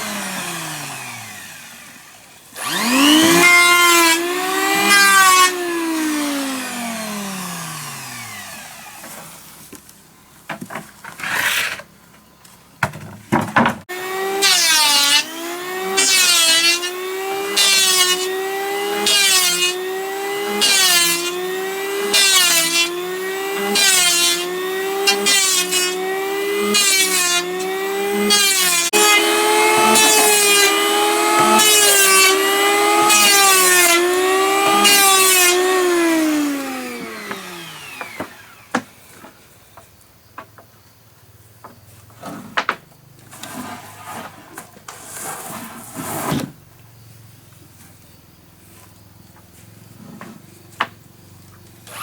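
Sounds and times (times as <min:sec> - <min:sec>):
power planer cutting wood: 0:00.0 - 0:09.5, 0:13.9 - 0:39.3
wood knocking and scraping: 0:10.5 - 0:13.8, 0:28.9 - 0:34.9.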